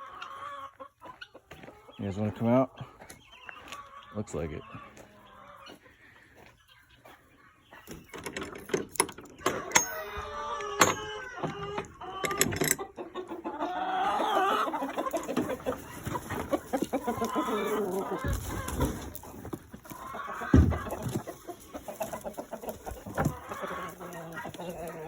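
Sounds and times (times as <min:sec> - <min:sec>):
chickens clucking: 0:00.0 - 0:25.0
dull thumps: 0:20.5 - 0:21.3.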